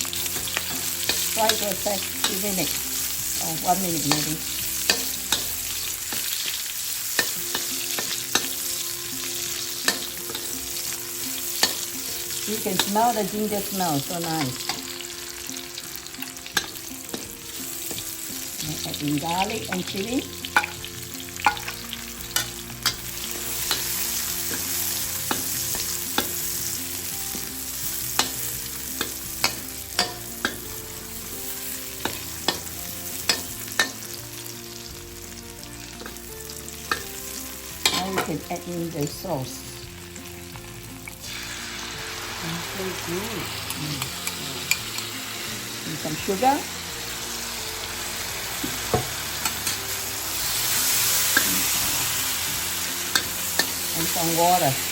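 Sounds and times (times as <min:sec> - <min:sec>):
spatula scraping a wok: 0:00.0 - 0:38.3, 0:43.5 - 0:54.9
ginger sizzling in hot oil: 0:00.0 - 0:54.9
spatula clicking against wok: 0:53.1 - 0:53.8.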